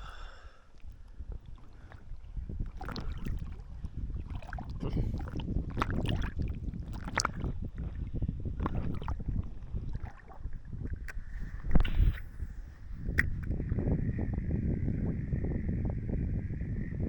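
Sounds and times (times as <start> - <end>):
water splashing and sloshing: 0.8 - 13.5.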